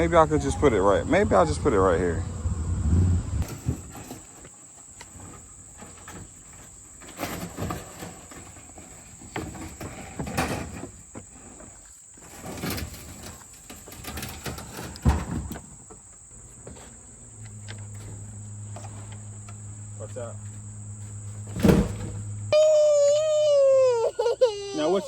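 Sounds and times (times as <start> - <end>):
insects trilling: 0.0 - 25.0
rustling and knocks of handling: 3.4 - 22.4.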